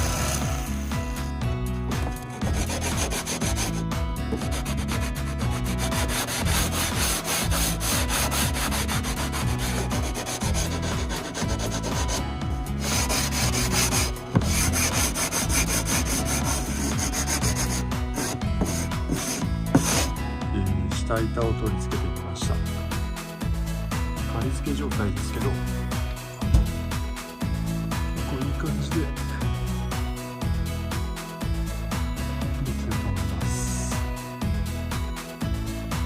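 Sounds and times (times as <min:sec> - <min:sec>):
hand sanding wood: 0:00.0 - 0:00.8, 0:02.0 - 0:20.2
background music: 0:00.0 - 0:36.0.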